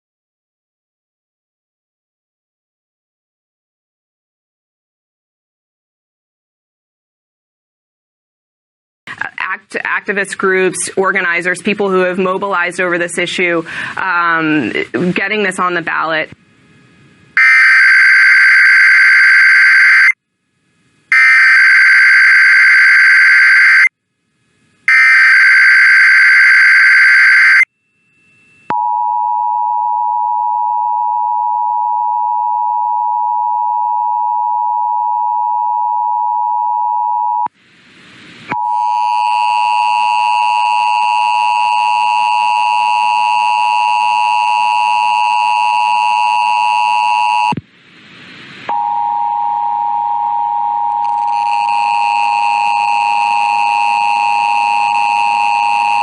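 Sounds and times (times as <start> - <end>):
steady single-pitch alert tone: 24.9 - 29.3.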